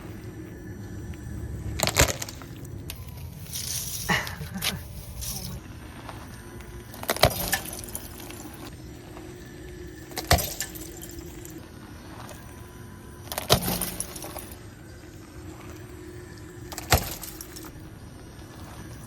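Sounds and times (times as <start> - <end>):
steady low hum: 0.0 - 19.0
rattle of breaking pieces: 10.1 - 11.6, 13.3 - 14.6, 16.7 - 17.7.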